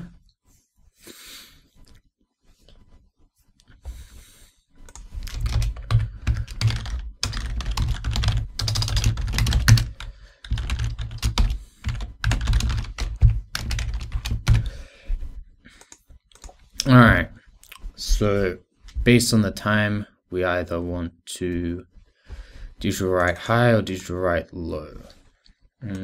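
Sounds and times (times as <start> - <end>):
typing on computer keyboard: 4.9 - 14.7.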